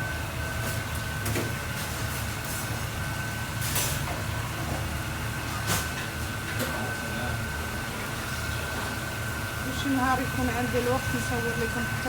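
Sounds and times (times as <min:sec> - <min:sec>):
low machine rumble: 0:07.0 - 0:12.0.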